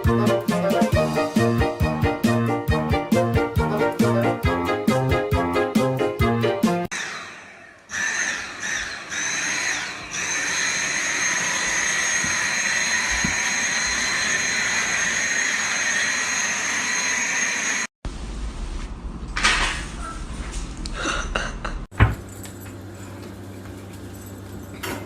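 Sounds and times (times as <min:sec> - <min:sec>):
music: 0:00.0 - 0:06.9
small electric motor whining: 0:07.9 - 0:17.9.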